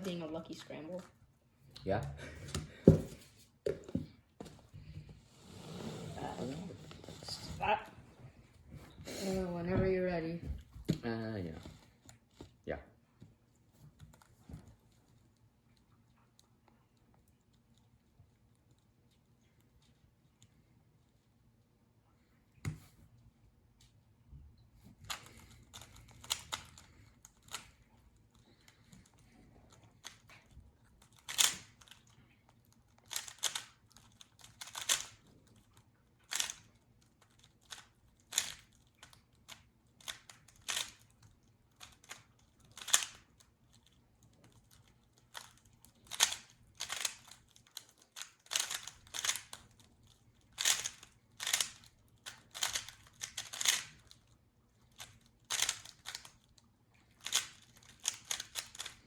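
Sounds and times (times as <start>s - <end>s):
puzzle cube plastic clicks: 25.0s - 27.9s, 28.5s - 59.0s.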